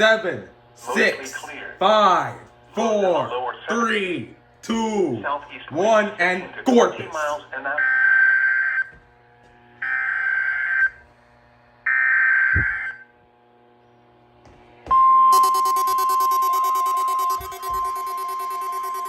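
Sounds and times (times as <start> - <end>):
steady warning alarm tone: 9.8 - 11.0, 11.9 - 13.1, 14.9 - 19.0
buzzy data bursts: 15.3 - 19.0.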